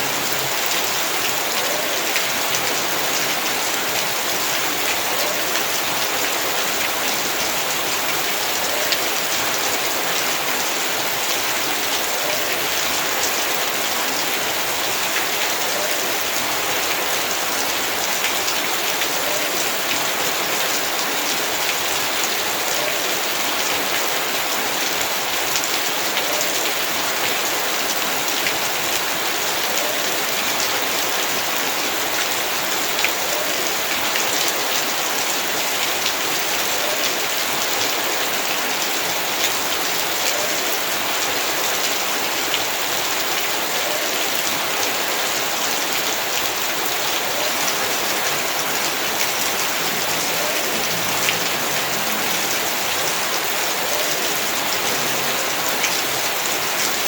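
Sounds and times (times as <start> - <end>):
heavy rain falling: 0.0 - 57.0.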